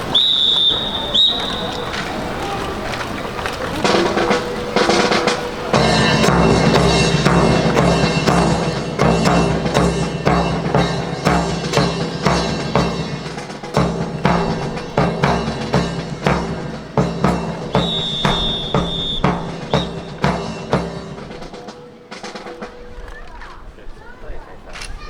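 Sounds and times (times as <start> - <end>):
drum-led music: 3.6 - 23.2
bass drum and snare beat: 3.8 - 22.8.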